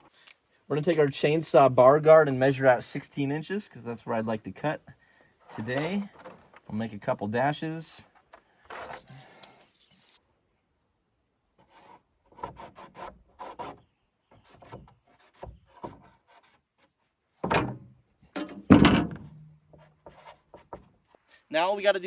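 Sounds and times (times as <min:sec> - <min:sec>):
knocking scrapes: 0:11.6 - 0:17.8, 0:18.4 - 0:21.3.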